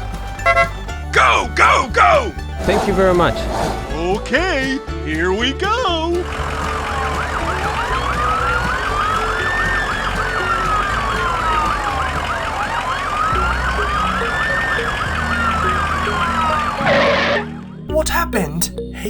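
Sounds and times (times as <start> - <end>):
wailing siren: 6.7 - 17.8
fast warbling siren: 7.7 - 17.6.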